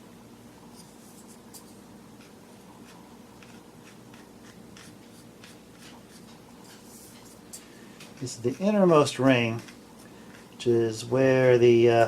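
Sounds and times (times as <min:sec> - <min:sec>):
low steady hum: 0:00.0 - 0:12.0
faint scratching strokes: 0:00.7 - 0:11.1.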